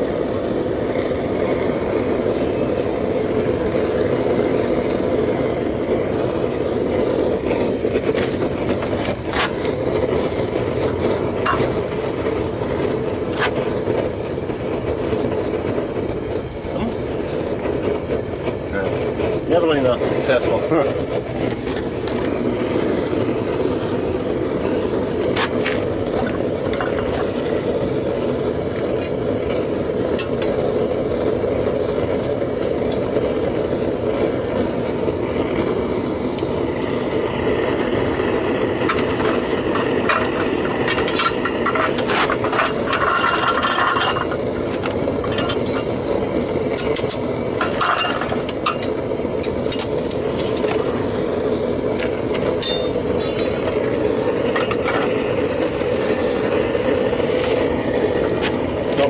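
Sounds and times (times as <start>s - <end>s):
propane burner roaring: 0.0s - 59.0s
metal tools clinking and scraping: 40.9s - 44.4s, 46.8s - 48.9s, 52.6s - 53.8s.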